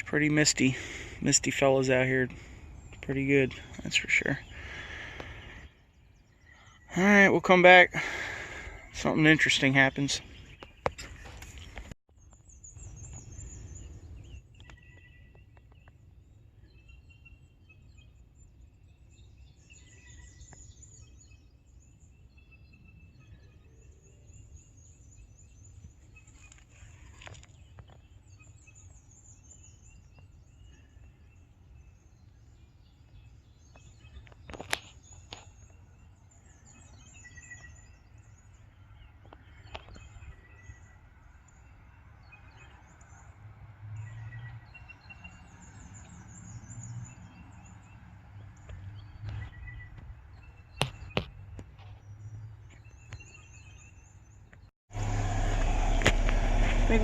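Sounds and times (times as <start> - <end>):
birds chirping: 0.0 - 57.0
low steady rumble: 54.9 - 57.0.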